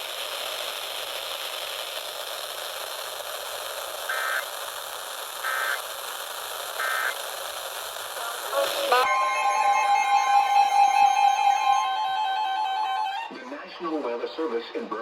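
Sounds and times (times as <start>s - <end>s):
radio receiver hiss: 0.0s - 9.1s
short digital data bursts: 3.5s - 9.1s.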